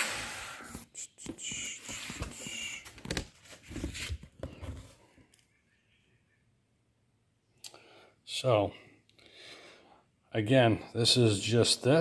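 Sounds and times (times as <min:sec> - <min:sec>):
objects being handled: 0:00.6 - 0:05.5.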